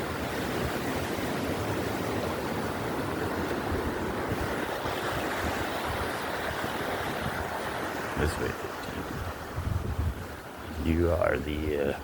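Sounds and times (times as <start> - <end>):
running water rushing: 0.0 - 12.0
wind buffeting microphone: 0.0 - 12.0.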